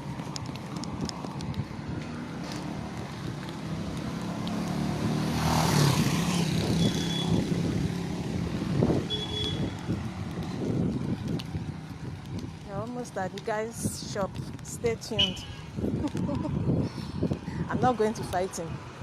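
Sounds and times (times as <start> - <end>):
vehicle engine passing: 1.8 - 11.9.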